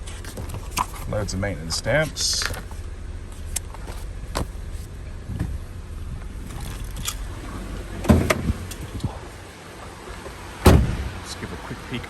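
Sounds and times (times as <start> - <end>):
car engine idling: 0.0 - 12.0
knocking thump: 5.3 - 5.7.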